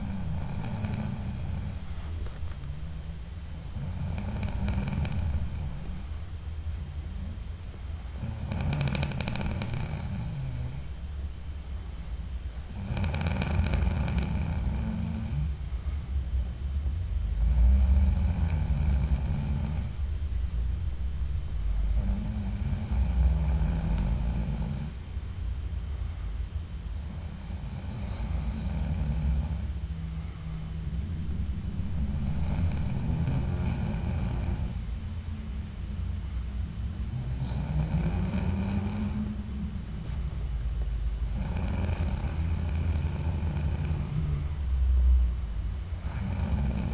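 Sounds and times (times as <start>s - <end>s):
man snoring: 0.0s - 2.0s, 3.5s - 6.1s, 8.1s - 10.9s, 12.6s - 16.0s, 17.3s - 20.0s, 21.7s - 25.0s, 27.0s - 30.5s, 31.8s - 34.9s, 37.0s - 39.4s, 41.2s - 44.5s, 45.9s - 46.9s.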